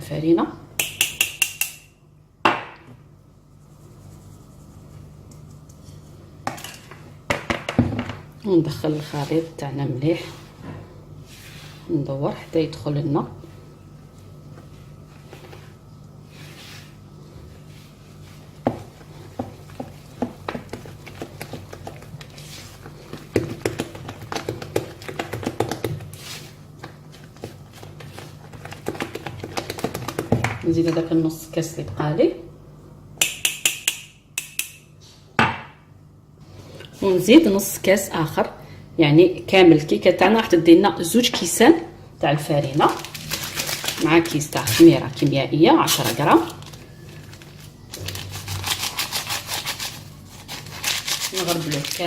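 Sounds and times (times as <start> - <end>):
steady low hum: 0.0 - 52.0
utensil tapping mixing bowl: 0.8 - 1.9, 23.1 - 26.1.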